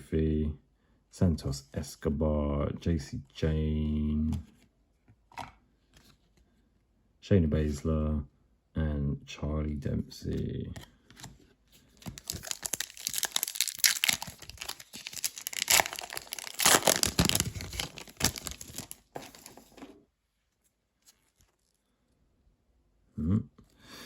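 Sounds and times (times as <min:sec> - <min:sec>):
wrapper being torn and crinkled: 0:12.0 - 0:19.5.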